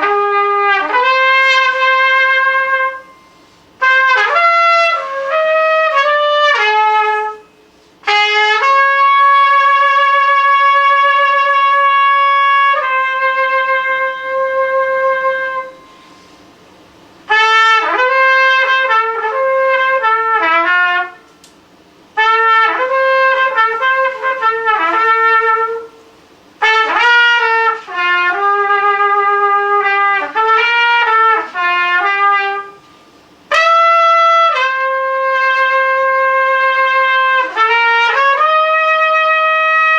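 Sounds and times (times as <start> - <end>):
solo trumpet: 0.0 - 39.9.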